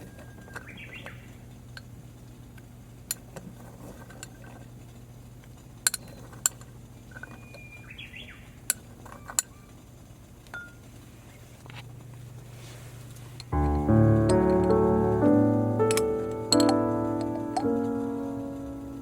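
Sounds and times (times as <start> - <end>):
bird chirping: 0.0 - 1.4, 7.2 - 8.6.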